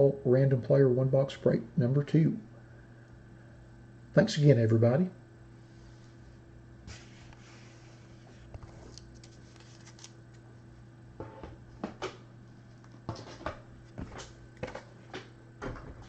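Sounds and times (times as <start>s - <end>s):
faint electrical hum: 0.0s - 16.0s.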